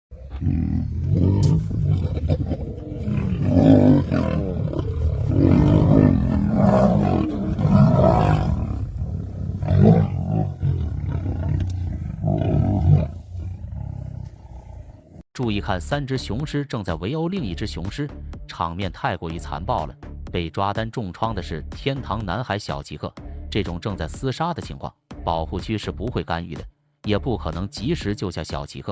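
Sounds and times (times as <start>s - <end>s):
lions growling and roaring: 0.1s - 15.2s.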